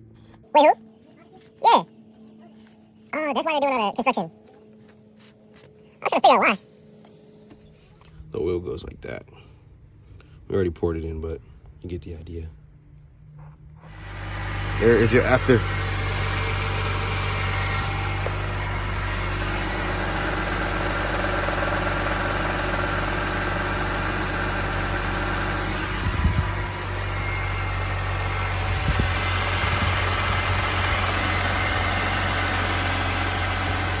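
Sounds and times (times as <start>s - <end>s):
car engine idling: 13.9s - 34.0s.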